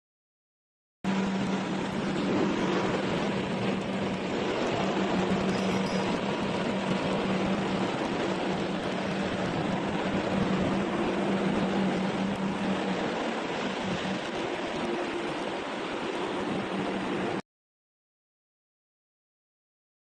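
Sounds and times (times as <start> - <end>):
machine running hum: 1.1 - 17.4.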